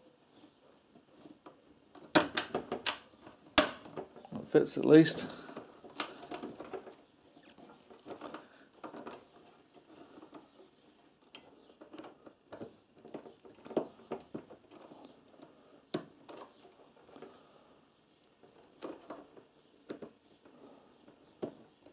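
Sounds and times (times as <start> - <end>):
small parts clicking and rustling: 0.2 - 17.6, 18.2 - 21.9.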